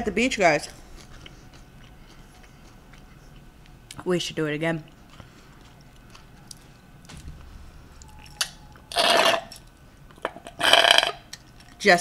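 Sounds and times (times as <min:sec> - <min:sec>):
soft chewing: 0:00.6 - 0:07.0.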